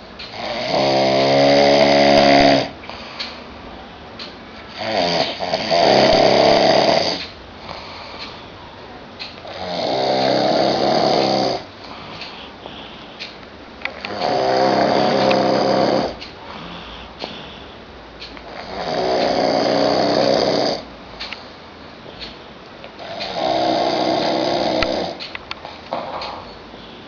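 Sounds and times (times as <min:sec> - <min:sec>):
person snoring loudly: 0:00.3 - 0:02.8, 0:04.7 - 0:08.1, 0:09.4 - 0:12.2, 0:13.9 - 0:17.4, 0:18.5 - 0:20.9, 0:23.0 - 0:25.2.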